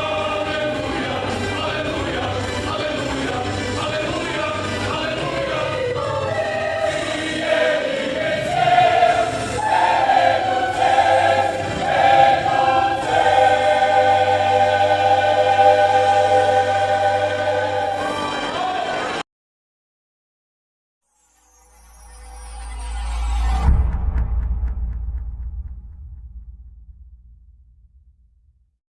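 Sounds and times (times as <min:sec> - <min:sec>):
youth choir singing gospel: 0:00.0 - 0:19.2.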